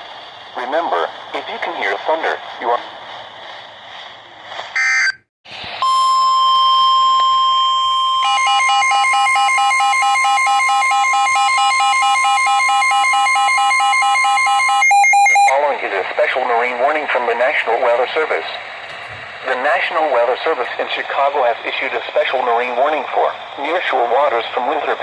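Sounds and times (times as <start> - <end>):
steady alarm tone: 5.8 - 15.5.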